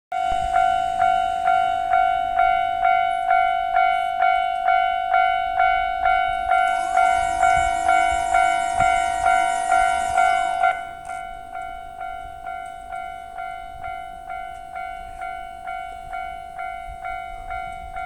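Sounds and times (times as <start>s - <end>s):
level-crossing warning bell: 0.1s - 18.0s
steady ringing tone: 0.1s - 18.0s
higher sliding tone: 6.6s - 11.0s.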